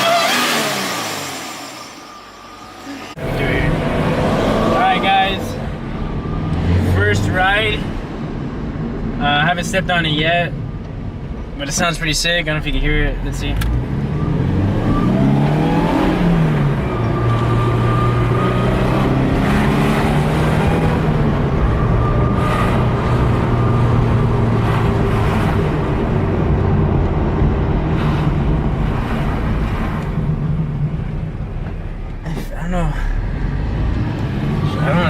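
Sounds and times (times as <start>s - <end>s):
car engine pulling away: 0.0s - 8.1s, 12.8s - 35.0s
faint high steady tone: 1.3s - 3.8s.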